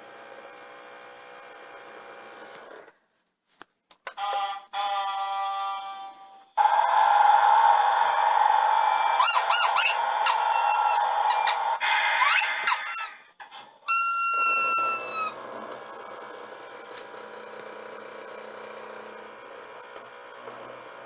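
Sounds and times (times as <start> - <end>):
toy electronic chirps and tones: 9.2 - 11.6, 13.9 - 15.3.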